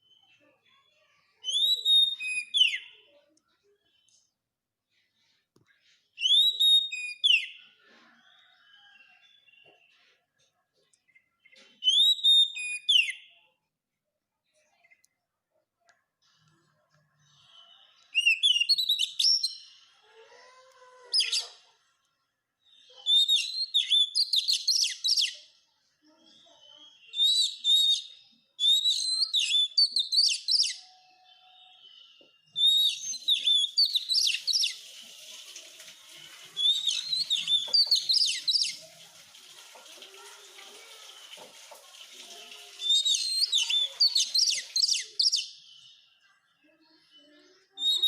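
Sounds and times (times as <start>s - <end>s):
bird singing chirps and whistles: 1.4s - 3.0s, 6.2s - 7.6s, 11.8s - 13.3s, 17.4s - 19.7s, 23.0s - 25.4s, 26.8s - 34.8s, 36.6s - 38.8s, 42.8s - 45.6s, 47.8s - 48.0s.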